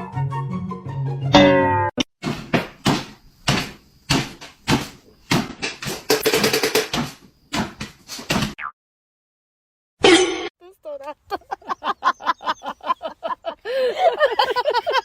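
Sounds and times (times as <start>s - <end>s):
knocks and bangs: 1.4s - 8.6s.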